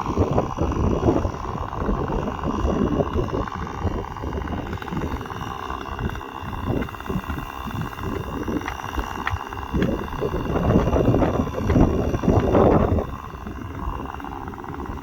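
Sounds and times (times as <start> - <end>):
chainsaw cutting tree trunk: 0.0 - 15.0.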